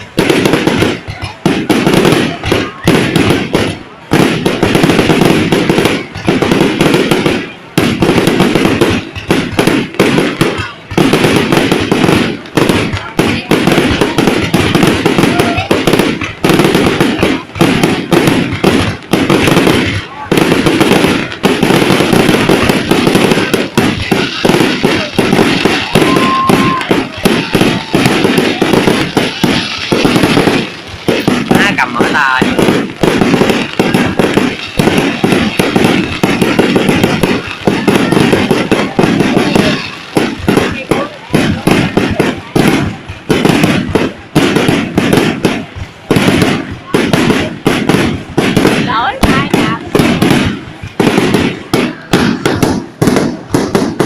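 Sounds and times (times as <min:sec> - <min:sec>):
fireworks bangs and crackles: 0:00.0 - 0:54.0.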